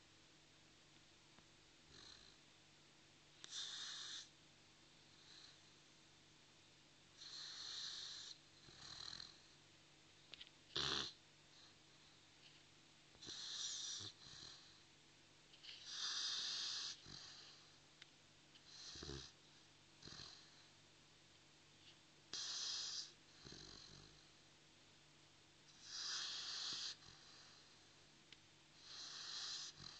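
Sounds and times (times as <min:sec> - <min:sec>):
dog snoring: 0:01.9 - 0:02.4, 0:03.4 - 0:04.3, 0:05.1 - 0:05.8, 0:07.2 - 0:09.6, 0:10.7 - 0:11.7, 0:13.2 - 0:14.8, 0:15.6 - 0:17.8, 0:18.6 - 0:19.4, 0:20.0 - 0:20.7, 0:22.3 - 0:24.4, 0:25.7 - 0:27.9, 0:28.8 - 0:29.9
dog snorting: 0:13.2 - 0:14.6, 0:15.6 - 0:17.5, 0:25.8 - 0:27.2.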